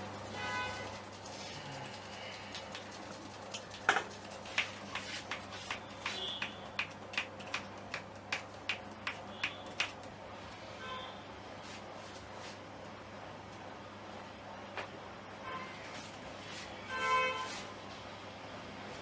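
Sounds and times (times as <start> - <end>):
sharp evenly spaced clicks: 2.5 - 10.1.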